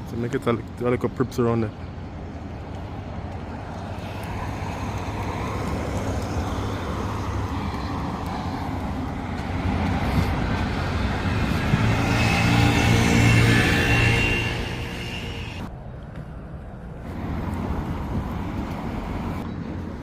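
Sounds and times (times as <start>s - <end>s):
road and tyre noise: 0.0s - 20.0s.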